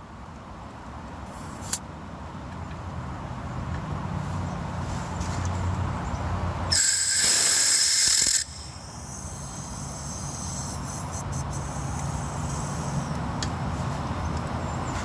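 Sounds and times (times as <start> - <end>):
refrigerant hissing from valve: 1.3 - 1.8, 6.7 - 13.4.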